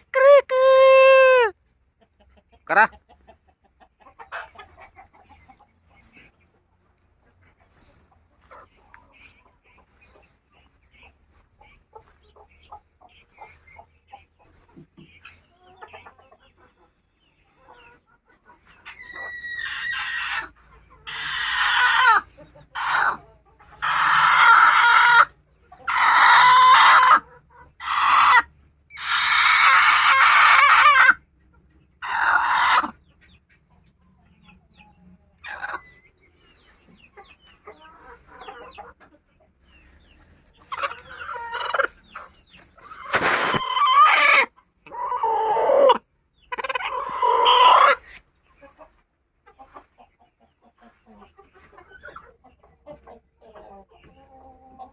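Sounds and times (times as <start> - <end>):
hens clucking: 0.0 - 54.9
roosters crowing: 23.8 - 27.2, 42.9 - 46.0, 46.7 - 48.0.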